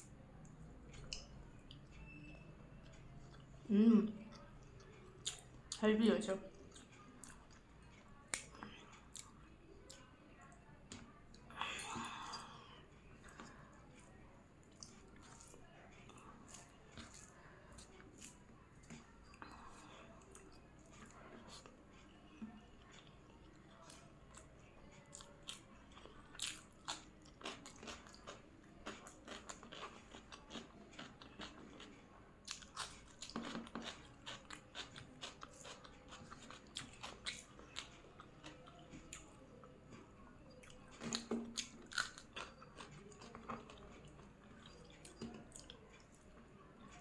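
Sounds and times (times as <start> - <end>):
person chewing food: 4.3 - 5.8, 10.9 - 46.2.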